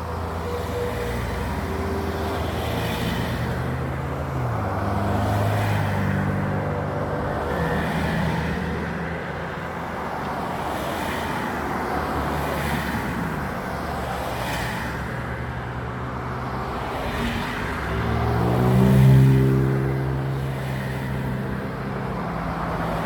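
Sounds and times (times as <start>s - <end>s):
road traffic: 0.0s - 23.0s
vehicle accelerating close by: 17.9s - 20.4s.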